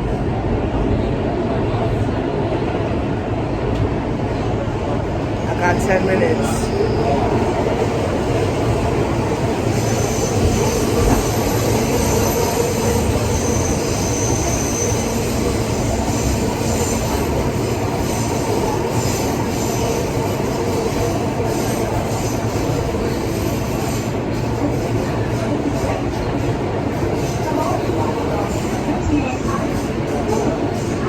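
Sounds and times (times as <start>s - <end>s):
train wheels rumbling on rails: 0.0s - 31.0s
high wheel squeal: 9.6s - 20.6s.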